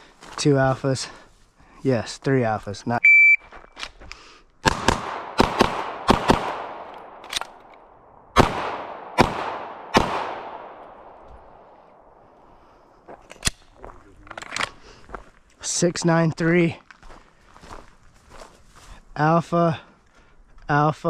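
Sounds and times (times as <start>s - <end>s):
gunshots with long echo: 4.6s - 12.6s.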